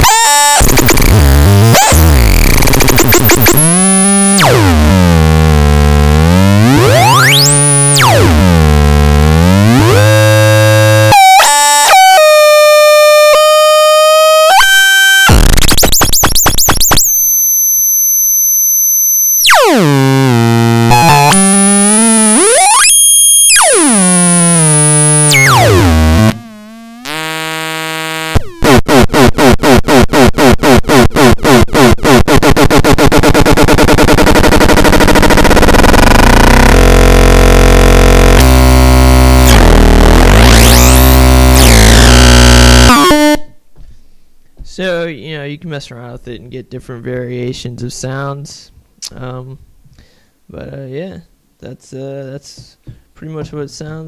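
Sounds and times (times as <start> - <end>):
fast electronic pulsing: 0.0 - 4.9, 5.7 - 10.5, 15.3 - 43.1
buzzing electronic theremin tones: 0.0 - 43.5.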